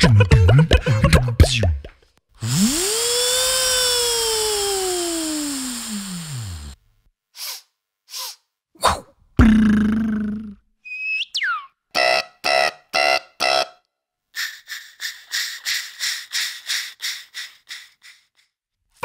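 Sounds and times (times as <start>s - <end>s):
beatboxer mouth sound effects: 0.0s - 2.0s, 7.4s - 10.6s, 14.4s - 18.5s.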